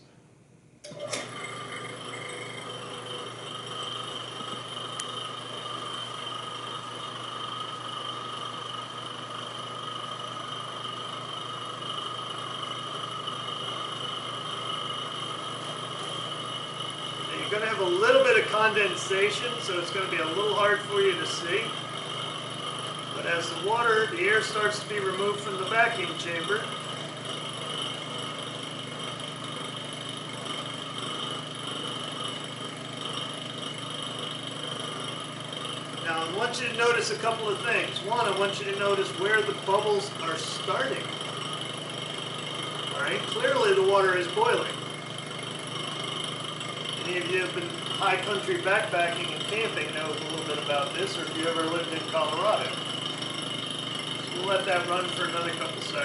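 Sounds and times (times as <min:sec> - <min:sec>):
vacuum pump whining: 0:00.8 - 0:56.0.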